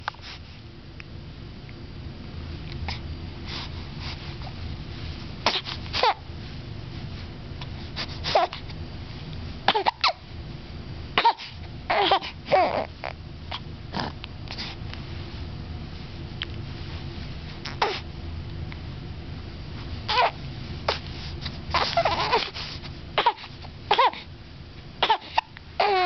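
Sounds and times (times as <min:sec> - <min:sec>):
baby hiccuping: 0:09.7 - 0:10.2
baby squeaking: 0:20.1 - 0:20.3, 0:21.8 - 0:22.5.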